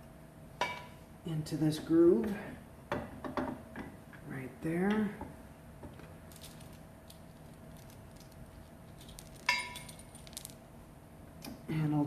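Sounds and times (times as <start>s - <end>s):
small metal hardware clinking: 9.0s - 10.6s.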